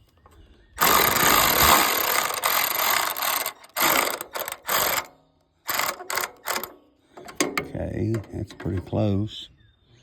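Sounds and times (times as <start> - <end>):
ratchet wrench clicking: 0.8 - 5.1, 5.7 - 8.3.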